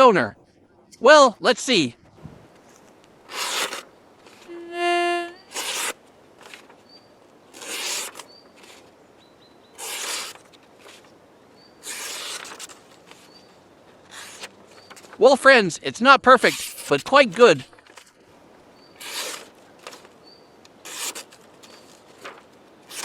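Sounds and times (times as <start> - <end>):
knife blade rasping through material: 3.3 - 3.8, 9.8 - 10.4, 11.8 - 12.5.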